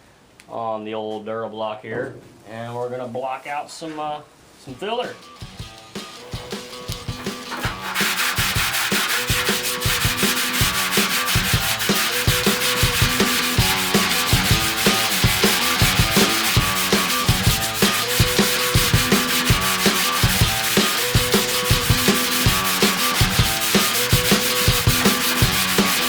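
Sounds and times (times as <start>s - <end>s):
sandpaper rasping on filler: 6.2s - 26.0s.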